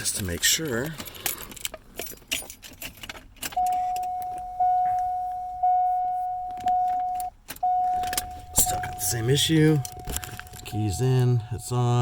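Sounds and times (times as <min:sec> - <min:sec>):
keys jingling: 0:00.7 - 0:05.5, 0:06.4 - 0:11.2
car warning chime: 0:03.6 - 0:12.0.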